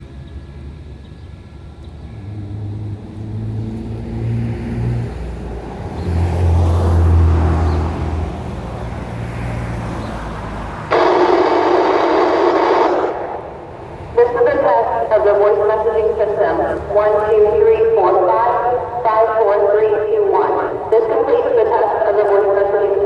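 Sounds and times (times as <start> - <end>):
vehicle passing by: 2.1 - 10.9.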